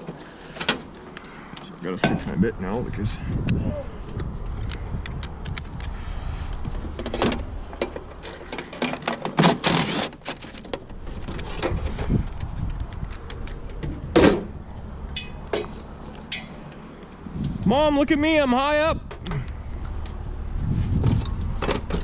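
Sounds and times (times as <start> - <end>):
steady low rumble: 10.8 - 22.0.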